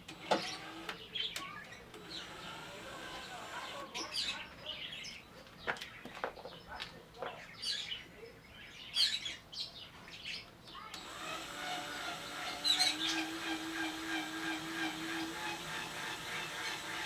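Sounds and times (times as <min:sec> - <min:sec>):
power drill humming: 0:00.0 - 0:04.3, 0:10.9 - 0:17.0
birds chirping: 0:00.0 - 0:17.0.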